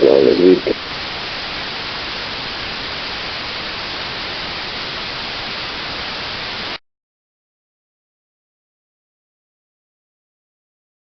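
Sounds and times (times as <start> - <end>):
broadcast static hiss: 0.0 - 6.8.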